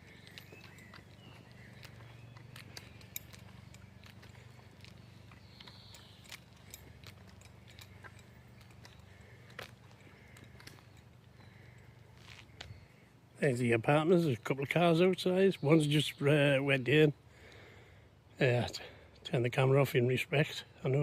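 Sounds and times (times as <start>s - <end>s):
faint bird chirps: 0.0s - 6.8s
footsteps on a path: 0.0s - 13.2s.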